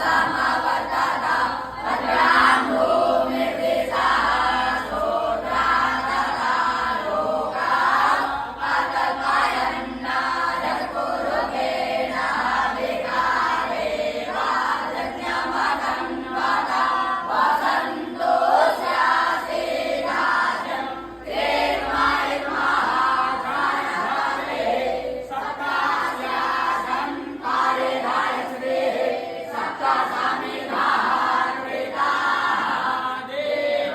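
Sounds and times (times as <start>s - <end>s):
young students chanting in unison: 0.0s - 33.9s.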